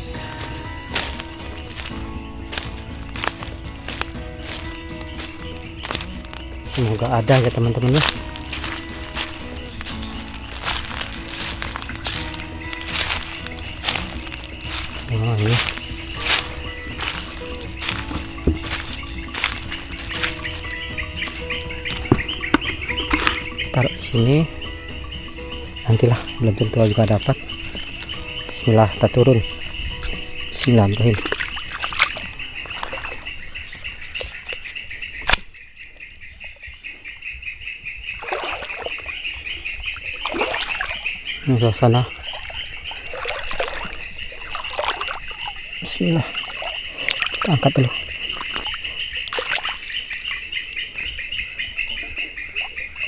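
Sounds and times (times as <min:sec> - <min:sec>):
water splashing around legs: 0:00.0 - 0:24.6, 0:25.6 - 0:36.2, 0:38.2 - 0:53.0
background music held notes: 0:00.0 - 0:35.4
pulsing insect chirp: 0:00.0 - 0:53.0.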